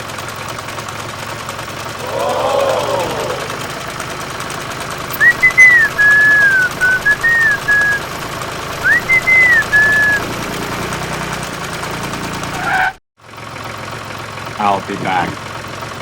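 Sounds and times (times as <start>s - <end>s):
person whistling a tune: 5.1s - 8.0s, 8.8s - 10.3s.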